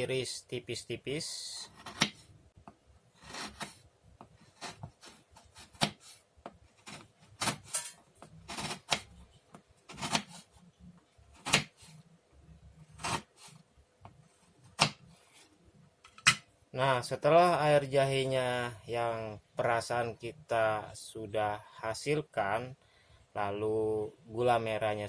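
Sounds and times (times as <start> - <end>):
knife slicing sugar block: 1.6 - 2.3, 3.2 - 6.2, 6.8 - 9.2, 9.9 - 10.5, 11.3 - 12.0, 12.9 - 13.6, 14.6 - 15.4.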